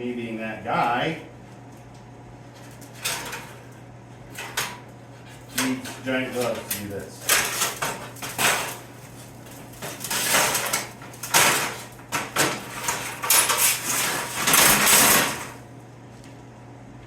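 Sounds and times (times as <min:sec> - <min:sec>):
sheet metal scraping and rattling: 0:02.9 - 0:03.7, 0:04.4 - 0:15.6.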